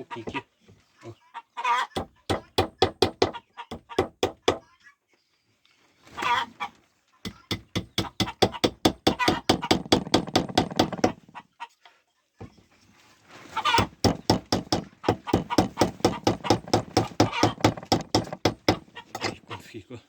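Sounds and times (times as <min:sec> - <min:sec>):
chicken clucking: 0:00.0 - 0:02.3, 0:06.2 - 0:06.8, 0:13.6 - 0:13.8.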